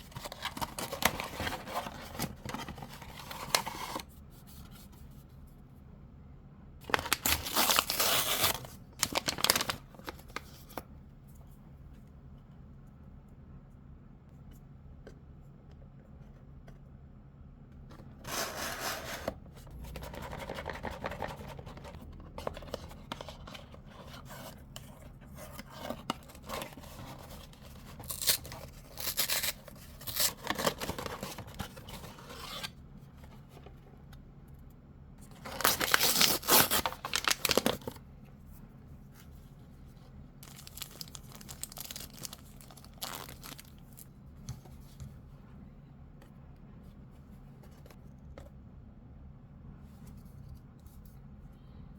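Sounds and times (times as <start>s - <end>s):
packaging rustling and tearing: 0.0s - 4.0s, 6.8s - 10.8s, 25.5s - 32.7s, 35.3s - 38.0s, 40.4s - 44.1s.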